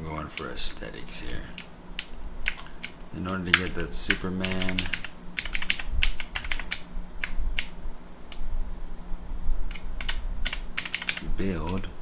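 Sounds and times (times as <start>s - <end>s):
keyboard keys clicking: 2.4s - 7.7s, 9.7s - 11.8s.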